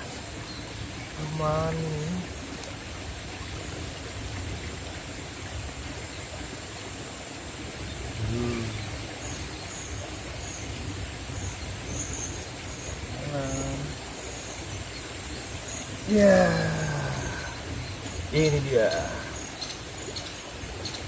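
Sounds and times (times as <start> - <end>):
insects droning: 0.0 - 21.0
person speaking: 1.2 - 2.3, 8.2 - 8.8, 13.1 - 14.0, 16.1 - 17.6, 18.3 - 19.4.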